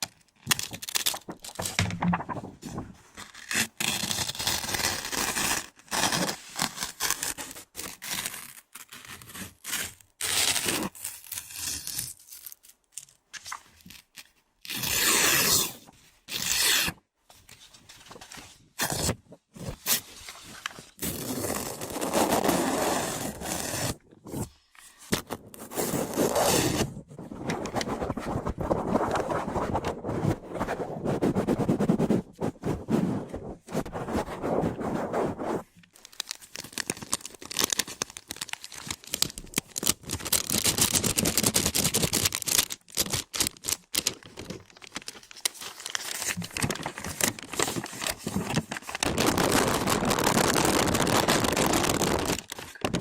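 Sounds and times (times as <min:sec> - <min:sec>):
scratching and scraping at microphone: 0:00.8 - 0:06.3, 0:19.0 - 0:36.0, 0:45.8 - 0:53.0.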